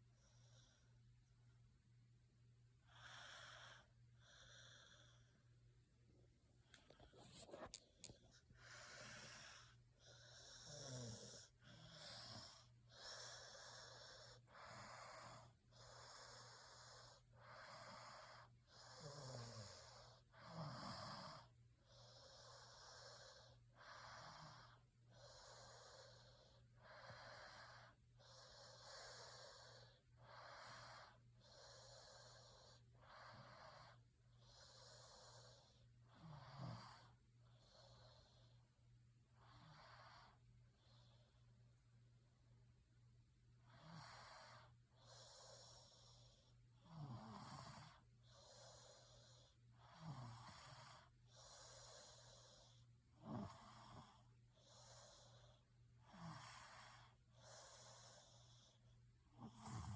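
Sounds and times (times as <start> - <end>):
person snoring: 7.0 - 21.5, 59.4 - 59.9.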